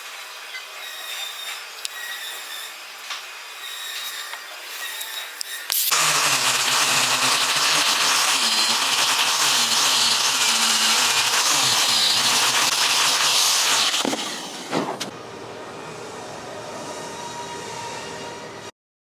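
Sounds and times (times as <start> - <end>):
power tool running against wood: 5.8 - 15.1.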